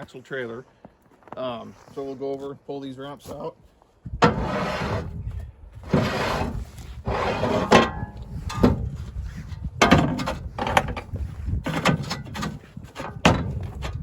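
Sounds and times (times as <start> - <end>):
metal ramps scraping: 4.2 - 5.2, 5.8 - 14.0.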